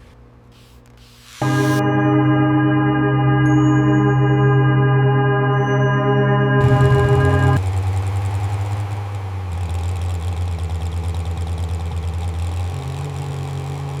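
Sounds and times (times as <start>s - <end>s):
car engine idling: 6.6s - 14.0s.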